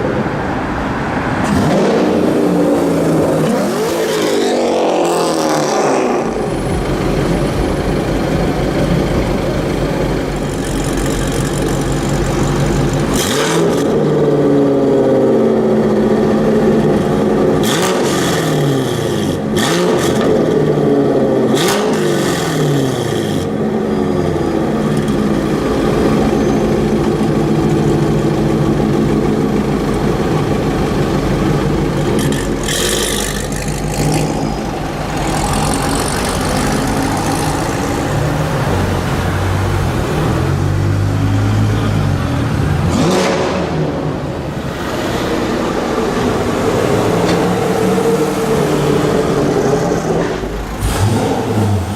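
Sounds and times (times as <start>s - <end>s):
loud car engines revving: 0.0s - 51.9s.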